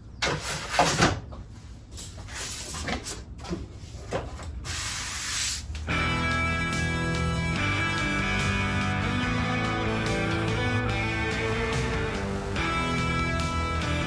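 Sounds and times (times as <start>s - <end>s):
scraping strokes on wood: 3.8s - 5.7s
guitar music: 5.9s - 14.0s.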